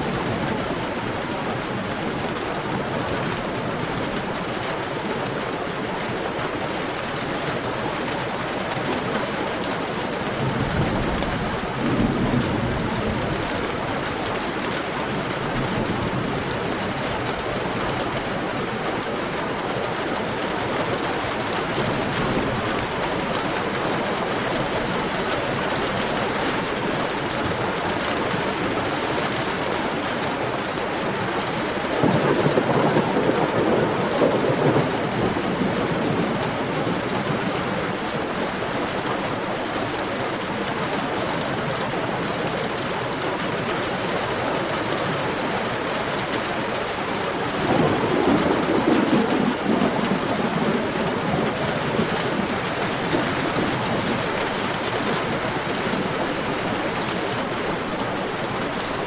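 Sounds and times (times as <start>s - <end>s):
heavy rain hissing: 0.0s - 59.0s
thunder rolling: 32.0s - 38.0s, 47.5s - 57.1s.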